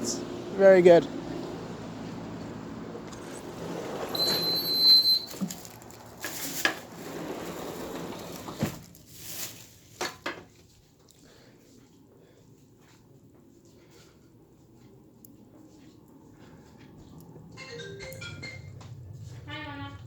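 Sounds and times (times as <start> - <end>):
air conditioner unit hum: 0.0 - 20.0
door opening and shutting: 3.1 - 5.4
brief squeak: 4.1 - 5.4.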